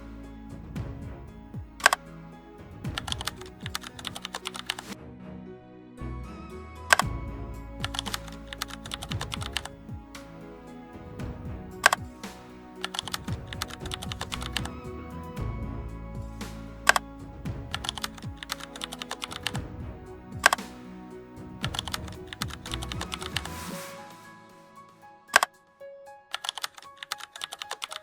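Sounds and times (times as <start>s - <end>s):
background music with bass: 0.0s - 24.6s
sharp irregular clicks: 1.8s - 2.1s, 2.9s - 5.0s, 7.8s - 9.8s, 11.8s - 12.2s, 12.8s - 14.7s, 16.8s - 17.0s, 17.7s - 19.6s, 21.6s - 23.5s, 26.4s - 28.0s.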